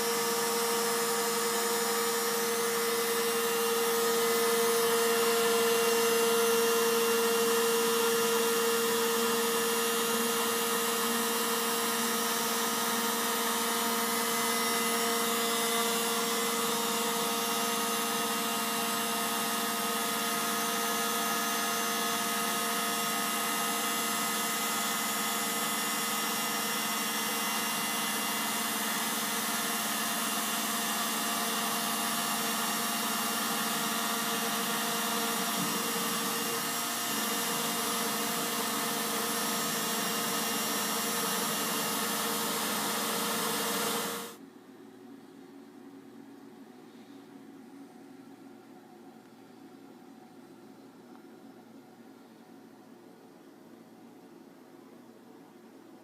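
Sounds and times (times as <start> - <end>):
cnc machine whining: 0.0 - 44.4.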